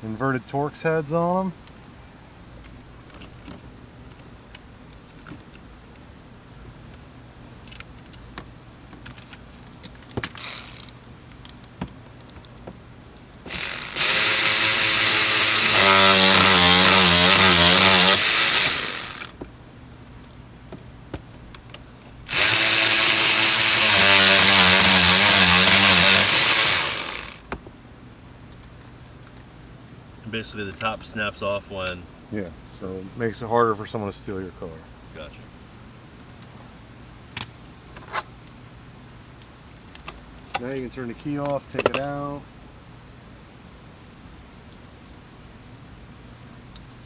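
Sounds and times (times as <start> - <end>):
cordless power driver running: 10.3 - 10.9, 13.5 - 19.4, 22.3 - 27.5.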